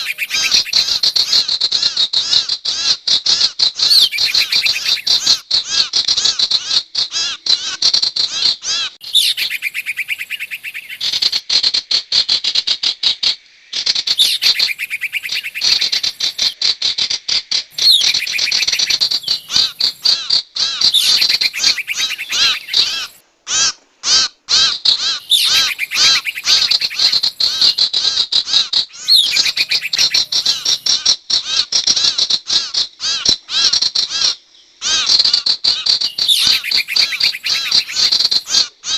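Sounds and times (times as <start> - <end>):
birds chattering calls: 0.0 - 11.5, 13.6 - 38.9.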